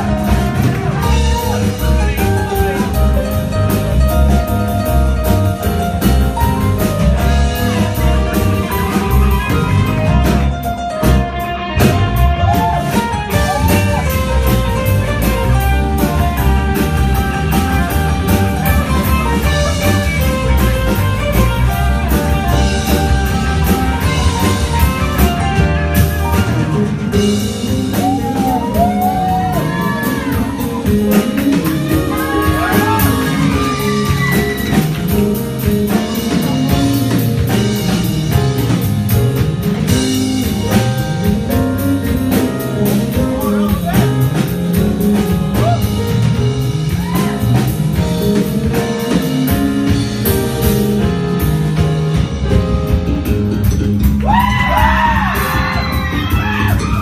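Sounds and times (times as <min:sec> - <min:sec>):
drum kit: 0:00.0 - 0:57.0
electric bass: 0:00.0 - 0:57.0
electric guitar: 0:00.0 - 0:57.0
piano: 0:00.0 - 0:57.0.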